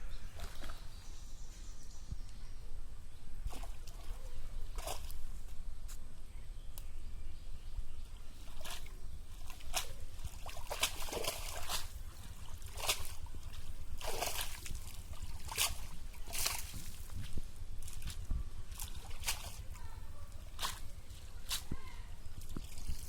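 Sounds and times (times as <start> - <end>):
steady low rumble: 0.0 - 23.0
water splashing and sloshing: 3.4 - 5.6, 8.3 - 23.0.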